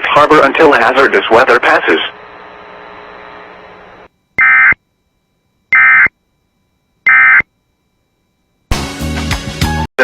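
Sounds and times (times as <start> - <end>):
digital data tone bursts: 4.4 - 4.8, 5.7 - 6.1, 7.0 - 7.5.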